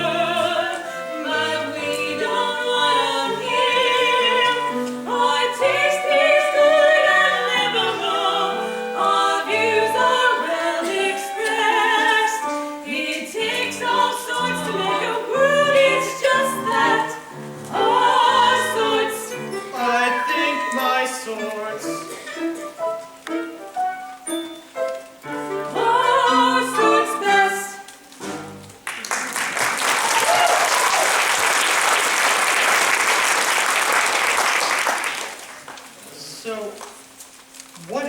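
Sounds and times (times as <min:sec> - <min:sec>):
singers with vibrato: 0:00.0 - 0:22.5, 0:25.6 - 0:28.1
instrumental accompaniment: 0:00.0 - 0:28.9.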